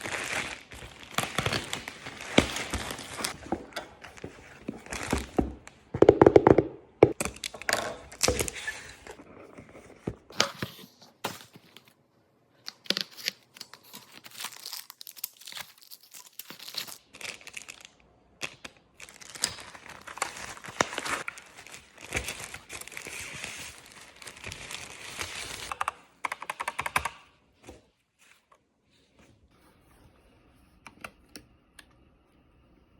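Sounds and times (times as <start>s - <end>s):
plastic and paper wrapping tearing: 0.0s - 3.5s, 12.7s - 25.7s.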